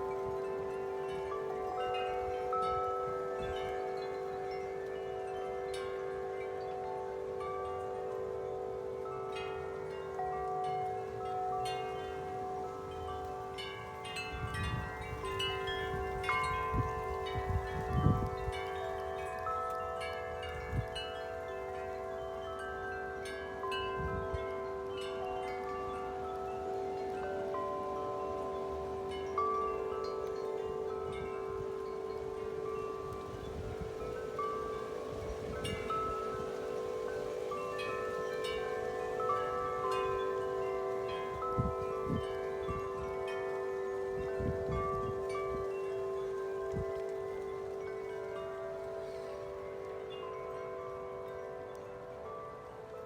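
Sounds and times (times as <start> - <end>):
wind chimes ringing: 0.0 - 53.0
wind rumbling on microphone: 12.1 - 50.6.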